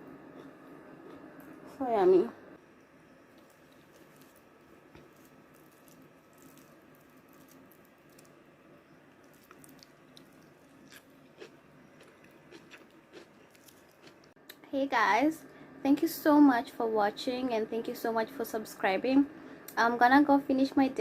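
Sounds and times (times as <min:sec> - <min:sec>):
person chewing: 0:03.4 - 0:08.4, 0:09.1 - 0:14.4.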